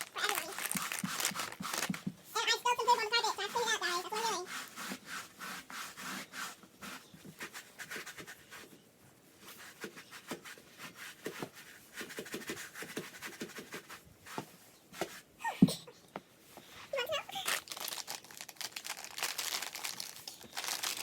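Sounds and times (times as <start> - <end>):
wipes scrubbing on a surface: 2.4 - 15.3.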